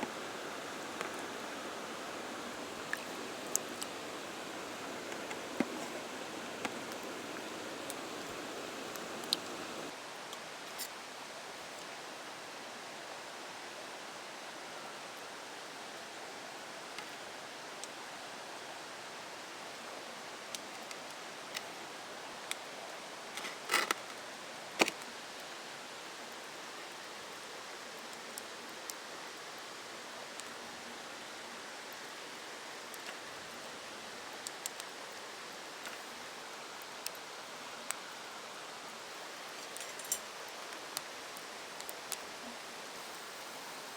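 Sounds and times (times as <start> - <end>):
campfire crackling and popping: 0.0 - 9.9, 39.0 - 43.6.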